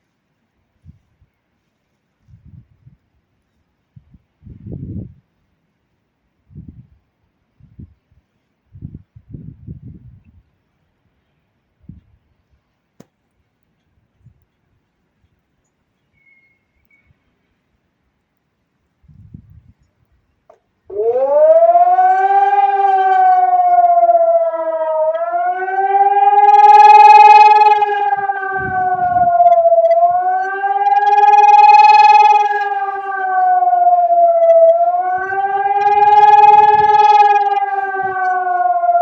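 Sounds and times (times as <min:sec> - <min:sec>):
civil defence siren wailing: 0:20.9 - 0:39.0.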